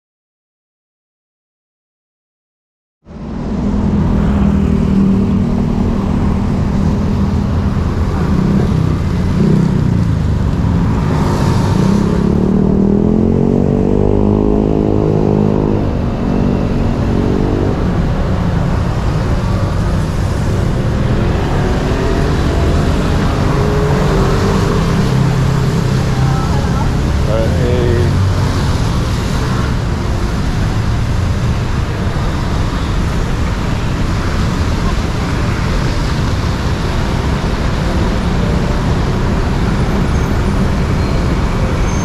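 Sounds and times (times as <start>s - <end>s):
car and motorcycle engines passing: 3.1s - 42.0s
engine revving up: 20.2s - 29.8s.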